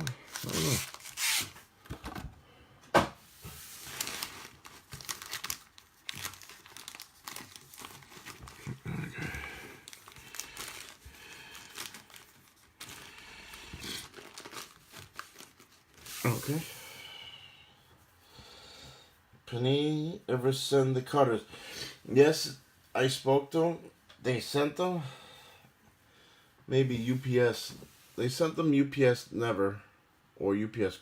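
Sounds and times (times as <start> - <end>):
plastic wrap crinkling and tearing: 0.0 - 1.6, 3.6 - 16.6.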